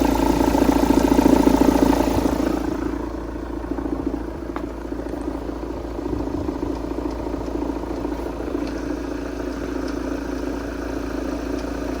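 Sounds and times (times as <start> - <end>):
engine idling with knocking clatter: 0.0 - 12.0.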